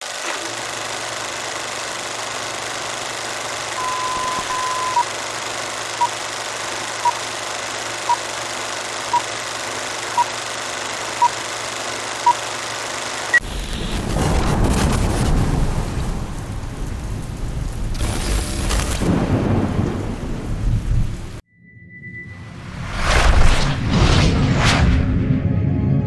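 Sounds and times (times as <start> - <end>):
high electronic beeps: 3.8 - 5.1
low hum: 20.4 - 26.0.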